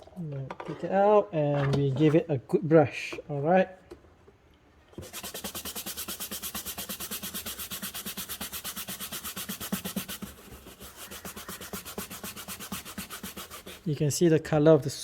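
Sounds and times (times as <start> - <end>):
brush scrubbing fabric: 5.0 - 14.2.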